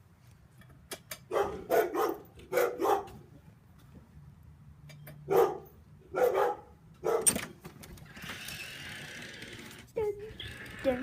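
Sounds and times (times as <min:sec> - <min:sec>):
dogs barking: 0:01.3 - 0:03.2, 0:05.3 - 0:07.4.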